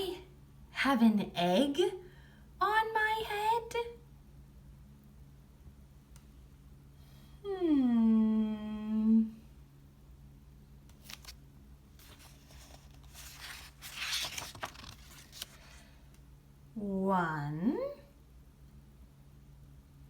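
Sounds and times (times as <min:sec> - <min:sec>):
woman humming: 0:07.4 - 0:09.5
paper page rustling: 0:10.9 - 0:11.4, 0:12.0 - 0:16.0.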